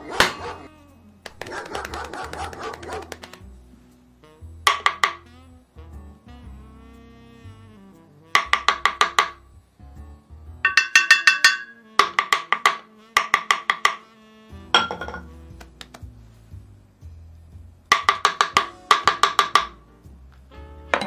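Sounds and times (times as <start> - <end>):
cartoon wood-block taps: 1.2 - 3.5, 4.7 - 5.3, 8.4 - 9.4, 10.6 - 14.1, 17.9 - 19.8.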